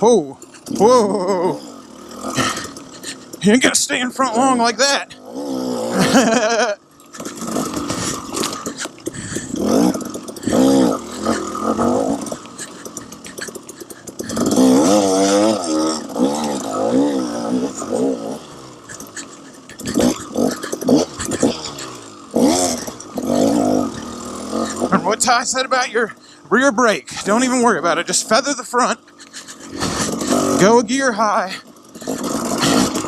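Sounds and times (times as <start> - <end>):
dirt bike engine revving: 0.0 - 33.0
knocks and clatter: 7.0 - 10.8.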